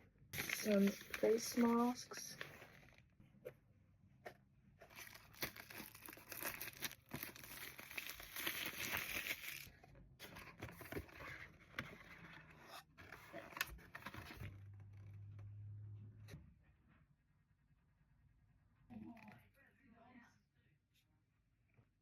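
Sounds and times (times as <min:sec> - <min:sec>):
packaging crinkling and tearing: 0:00.4 - 0:03.0, 0:04.8 - 0:09.8.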